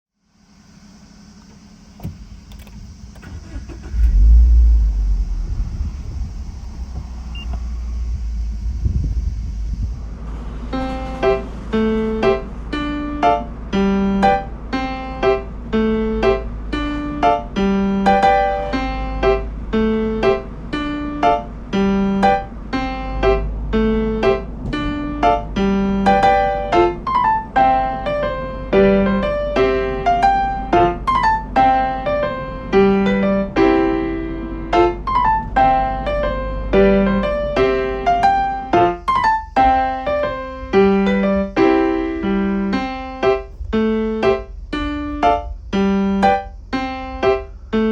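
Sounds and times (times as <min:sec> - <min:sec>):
steady low rumble: 0:00.4 - 0:47.9
piano keyboard repeating figure: 0:10.8 - 0:47.9.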